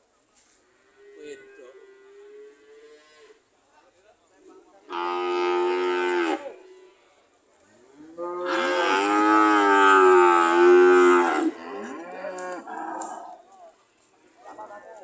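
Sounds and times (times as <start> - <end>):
cow mooing: 8.2 - 13.3.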